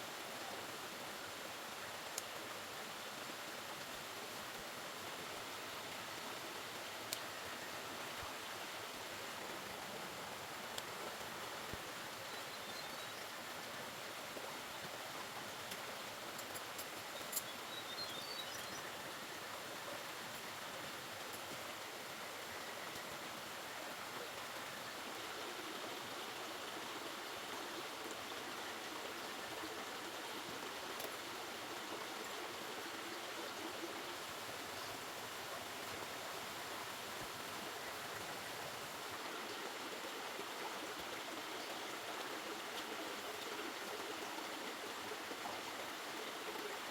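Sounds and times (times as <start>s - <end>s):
river water flowing: 0.0s - 46.9s.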